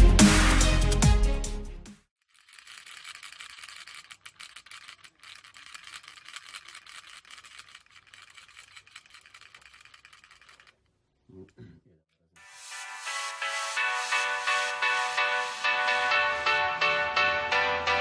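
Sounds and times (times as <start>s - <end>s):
rapid rattling clicks: 2.2s - 11.0s.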